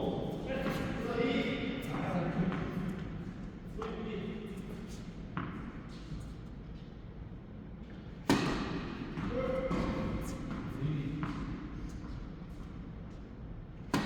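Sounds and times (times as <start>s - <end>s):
racket hitting tennis ball: 8.2s - 11.6s.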